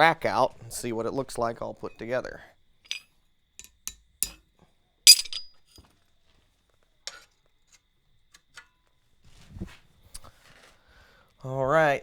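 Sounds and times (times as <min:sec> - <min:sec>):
metal hooks clinking: 0:02.9 - 0:04.4, 0:05.1 - 0:05.8.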